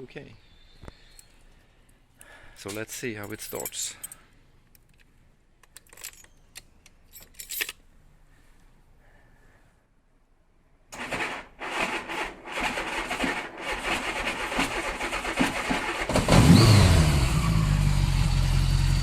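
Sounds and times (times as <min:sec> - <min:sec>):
starter motor cranking: 0:11.0 - 0:17.1
motorcycle engine idling: 0:17.4 - 0:19.0.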